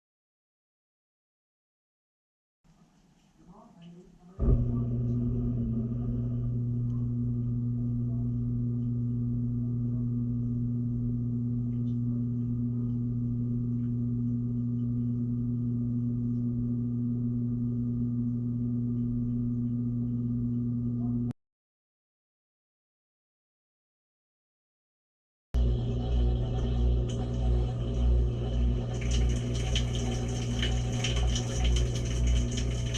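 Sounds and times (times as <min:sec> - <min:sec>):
washing machine humming: 0:02.8 - 0:21.3, 0:25.6 - 0:32.9.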